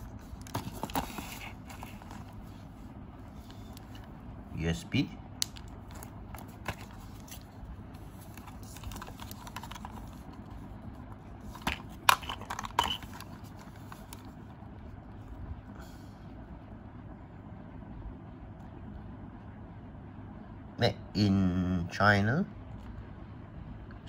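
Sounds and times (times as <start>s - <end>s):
packaging rustling: 0.0s - 2.7s, 5.4s - 10.6s, 11.4s - 14.5s.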